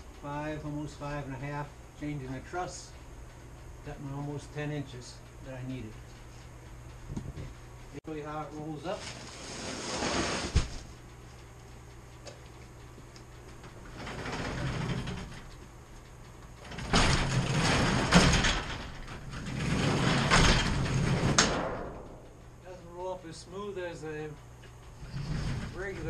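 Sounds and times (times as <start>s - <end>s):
garage door rolling up: 9.0s - 10.7s, 13.7s - 15.6s, 16.6s - 22.2s, 24.9s - 26.0s
garage door click: 13.8s - 15.6s, 16.6s - 22.4s.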